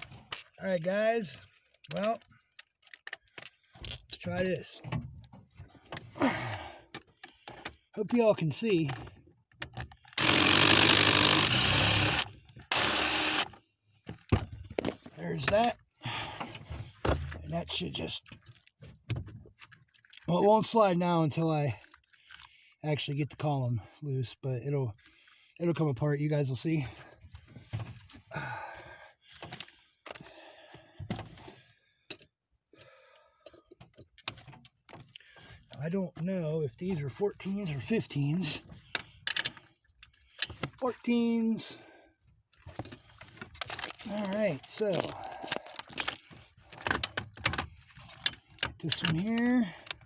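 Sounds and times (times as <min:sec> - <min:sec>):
person sighing or grunting: 0:06.1 - 0:06.9, 0:28.3 - 0:29.1, 0:44.2 - 0:45.8
power driver spinning a bolt: 0:10.2 - 0:13.5.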